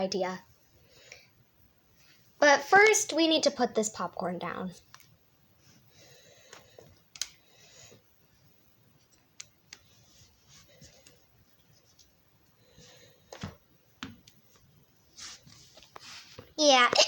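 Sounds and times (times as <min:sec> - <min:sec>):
soft scraping and rustling: 0:07.9 - 0:13.6, 0:14.4 - 0:16.6.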